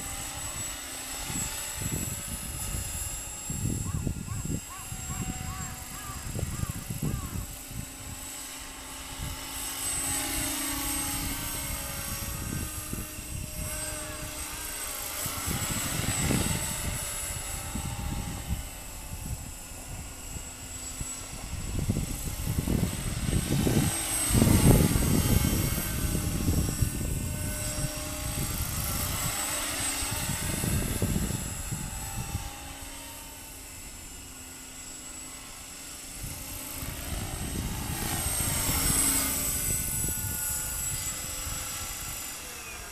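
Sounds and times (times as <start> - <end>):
model helicopter rotor whirring: 0.0 - 42.9.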